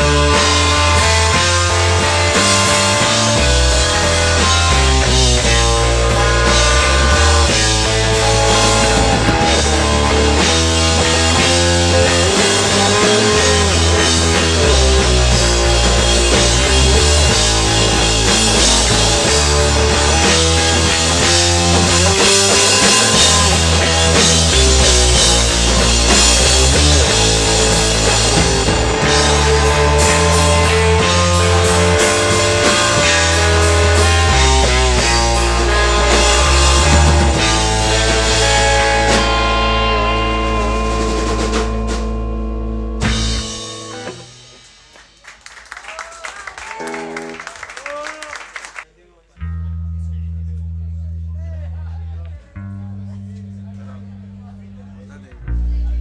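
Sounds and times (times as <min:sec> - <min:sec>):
bass line: 0:00.0 - 0:44.6, 0:49.4 - 0:56.0
rock band playing: 0:00.0 - 0:48.8.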